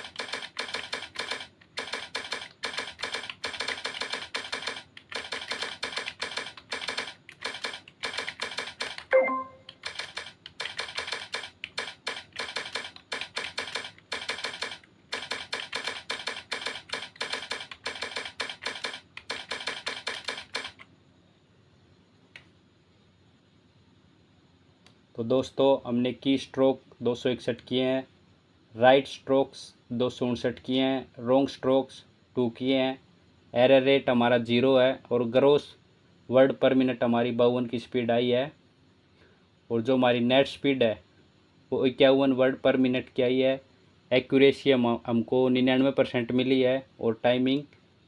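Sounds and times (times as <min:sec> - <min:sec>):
laptop keyboard typing: 0:00.0 - 0:20.9
short pitched ding: 0:09.2 - 0:09.6.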